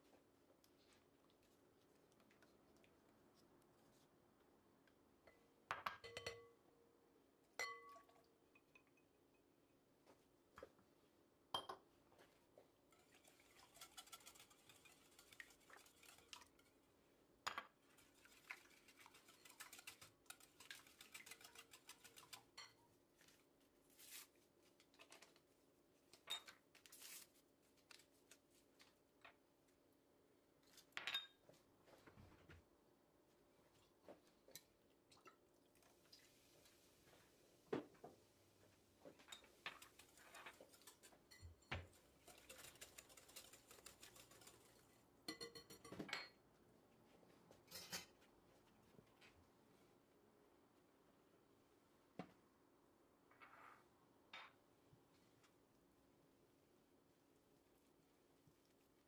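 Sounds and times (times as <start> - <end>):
utensils clinking against a bowl: 39.3 - 46.4.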